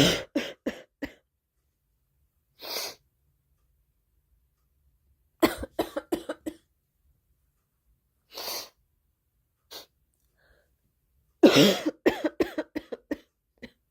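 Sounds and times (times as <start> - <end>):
girl coughing: 0.0 - 1.2, 5.4 - 6.6, 11.4 - 13.3
soft breath: 9.7 - 10.9.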